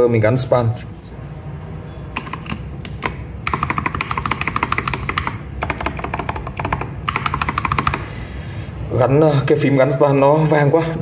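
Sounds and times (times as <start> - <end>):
keyboard key clacking: 2.2 - 8.0.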